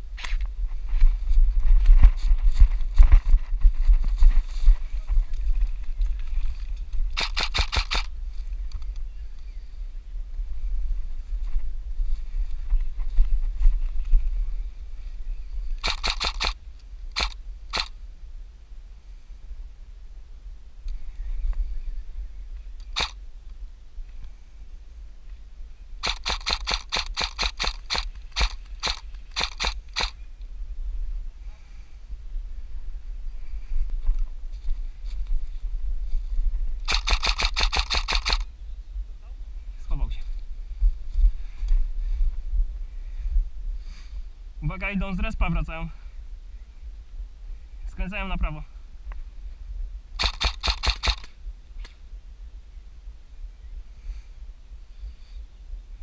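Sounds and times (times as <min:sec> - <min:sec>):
wind rumble on microphone: 0:00.0 - 0:56.0
sharp clicks: 0:06.9 - 0:08.1, 0:15.8 - 0:17.9, 0:22.8 - 0:23.2, 0:26.0 - 0:30.2, 0:36.8 - 0:38.5, 0:50.2 - 0:52.0
airsoft gun shots: 0:07.1 - 0:08.1, 0:15.8 - 0:17.9, 0:22.9 - 0:23.2, 0:26.0 - 0:30.2, 0:36.9 - 0:38.5, 0:50.2 - 0:51.3.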